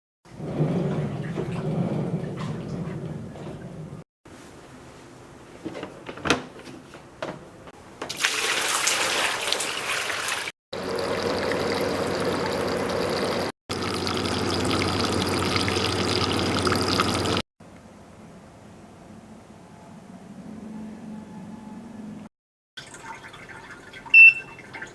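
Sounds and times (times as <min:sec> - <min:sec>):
water pouring and trickling: 0:08.1 - 0:17.4, 0:22.8 - 0:24.9.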